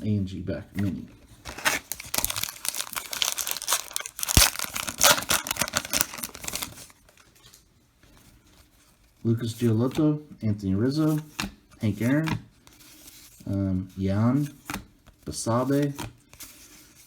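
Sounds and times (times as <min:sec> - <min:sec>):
plastic wrapper crinkling and tearing: 0:01.4 - 0:07.6.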